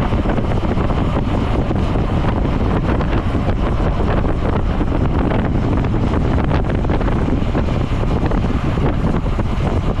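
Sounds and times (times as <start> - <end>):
wind rushing across microphone: 0.0 - 10.0.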